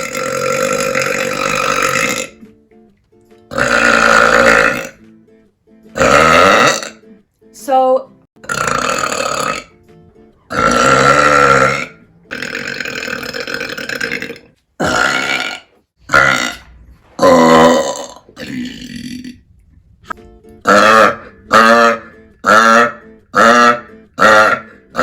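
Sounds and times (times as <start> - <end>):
woman burping loudly: 0.0 - 2.4, 3.5 - 5.0, 6.0 - 7.0, 8.4 - 9.8, 10.5 - 19.4, 20.6 - 25.0.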